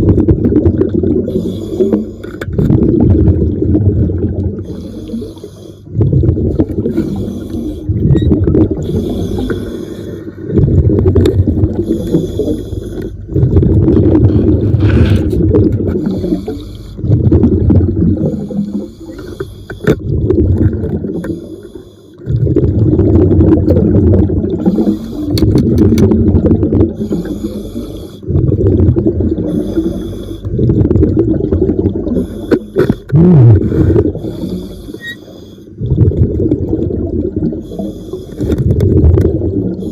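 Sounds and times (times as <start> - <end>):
exhaled bubbles rumbling: 0.0 - 39.9
regulator hiss on inhale: 1.3 - 2.3, 4.6 - 5.9, 6.9 - 7.9, 8.8 - 10.3, 16.0 - 17.0, 24.7 - 25.4, 27.0 - 28.2, 29.5 - 30.5, 33.7 - 35.8, 37.6 - 38.6.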